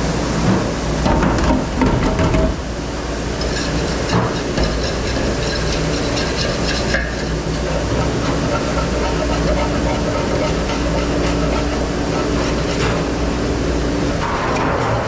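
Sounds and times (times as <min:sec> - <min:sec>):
steady hiss and low hum: 0:00.0 - 0:15.0
dishes and utensils clattering: 0:03.3 - 0:13.4.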